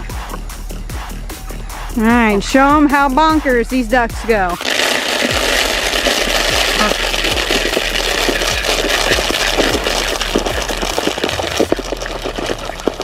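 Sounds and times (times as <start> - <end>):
ducks dabbling and splashing: 4.6 - 13.0.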